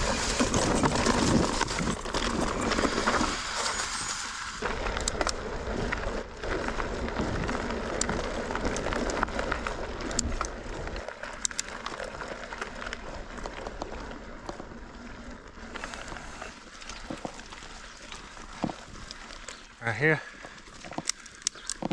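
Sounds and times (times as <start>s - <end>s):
bike rattling and clicking: 0.0s - 21.9s
bike tyres on dirt trail: 0.0s - 21.9s.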